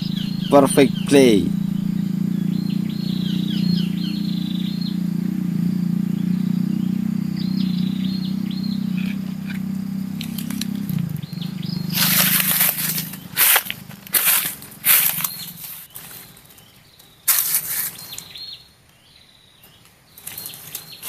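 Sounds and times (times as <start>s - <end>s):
loud low hum: 0.0s - 15.9s
bird chirping: 0.0s - 21.0s.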